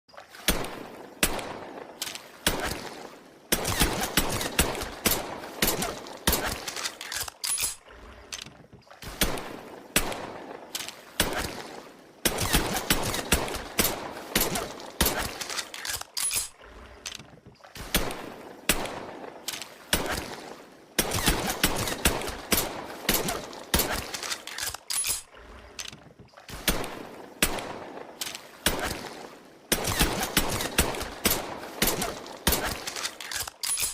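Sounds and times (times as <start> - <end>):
pistol gunshots: 2.4 - 7.3, 9.0 - 16.5, 17.9 - 25.2, 28.6 - 33.9.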